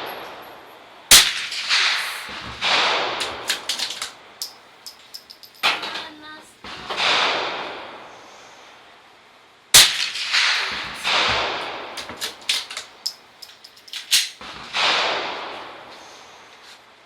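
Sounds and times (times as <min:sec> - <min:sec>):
rifle shot: 0:01.1 - 0:03.8, 0:09.8 - 0:11.9, 0:14.1 - 0:15.5.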